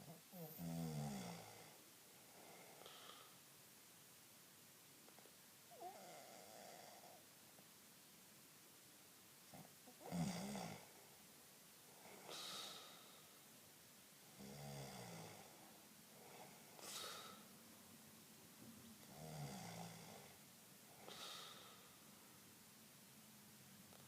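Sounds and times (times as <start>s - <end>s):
low rattling snores: 19.0s - 20.4s.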